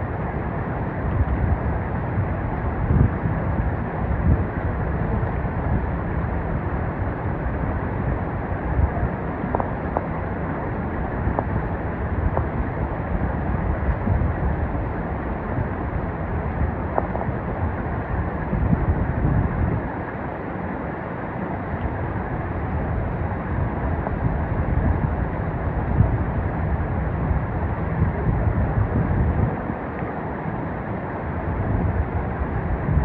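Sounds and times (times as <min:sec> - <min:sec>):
stream water rushing: 0:04.6 - 0:26.0, 0:29.4 - 0:32.9.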